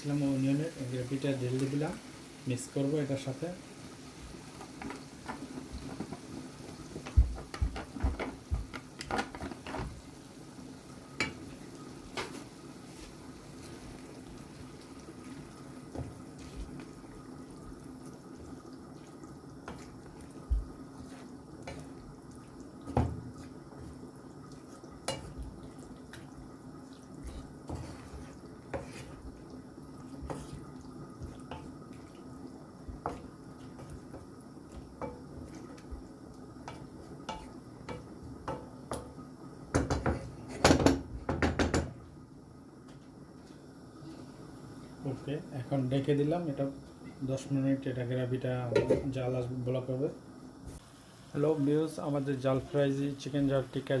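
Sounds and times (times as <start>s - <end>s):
spoon scraping a pan: 12.1s - 14.0s, 18.4s - 26.2s, 27.1s - 29.4s, 30.0s - 32.0s, 36.6s - 39.2s.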